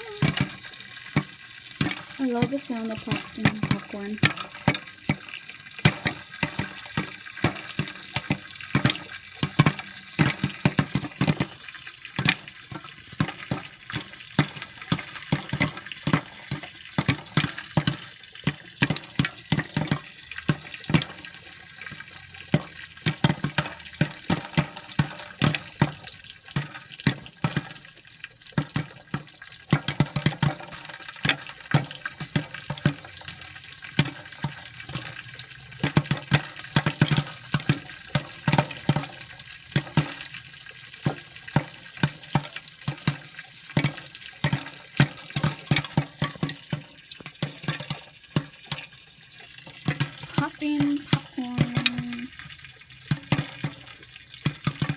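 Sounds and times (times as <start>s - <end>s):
hot pan hissing: 0.0s - 21.4s, 50.6s - 52.3s
popcorn popping: 0.0s - 27.9s, 28.6s - 40.3s, 40.9s - 48.9s, 49.7s - 52.5s, 53.1s - 54.9s.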